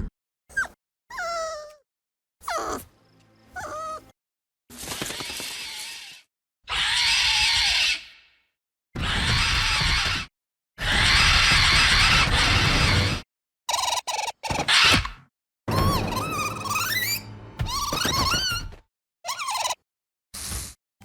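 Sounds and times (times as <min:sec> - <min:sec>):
puppy whimpering yelps: 0:00.5 - 0:01.8, 0:02.5 - 0:02.8, 0:03.6 - 0:04.0.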